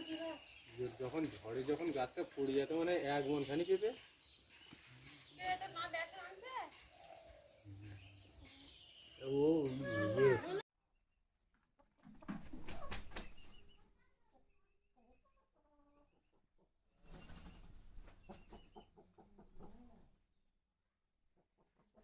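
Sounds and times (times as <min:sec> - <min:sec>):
chickens clucking: 0:11.8 - 0:20.3, 0:21.4 - 0:22.0.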